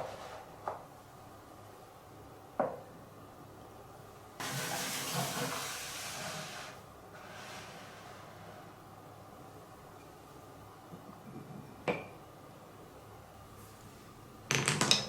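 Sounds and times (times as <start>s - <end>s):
glass marble knocking on wood: 14.5s - 15.0s.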